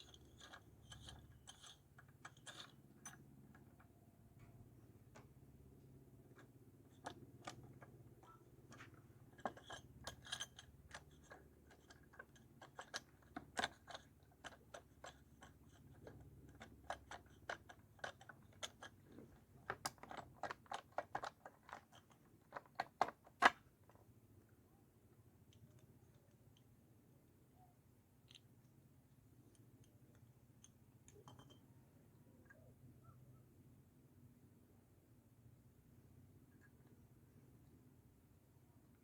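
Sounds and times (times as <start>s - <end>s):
tools and metal parts clinking: 0.0s - 5.3s, 6.3s - 23.5s, 30.6s - 31.8s.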